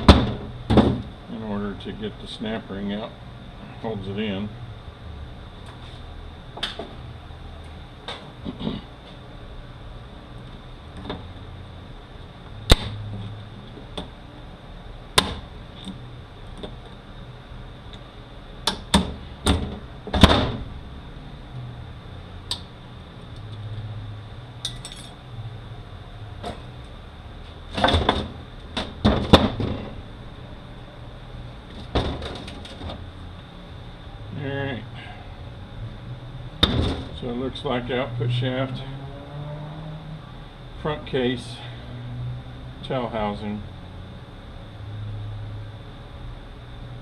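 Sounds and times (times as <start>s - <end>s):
hand tools clanking on metal: 24.6s - 25.2s.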